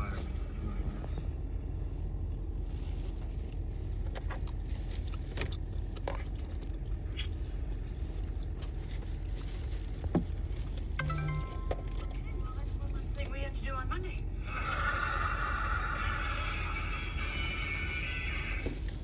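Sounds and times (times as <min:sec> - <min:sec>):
steady low rumble: 0:00.0 - 0:14.5.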